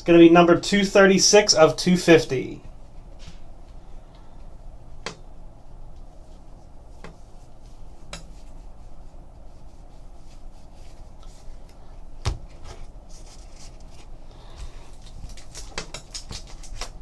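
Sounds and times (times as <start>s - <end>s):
cards rustling: 11.6s - 17.0s.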